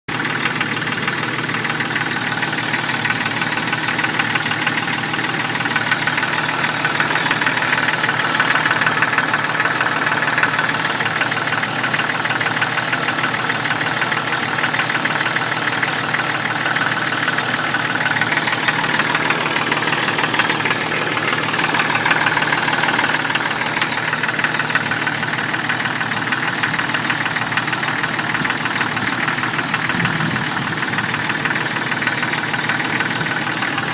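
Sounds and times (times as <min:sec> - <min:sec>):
car engine running: 0:00.1 - 0:33.9
rapid regular engine knock: 0:00.1 - 0:33.9.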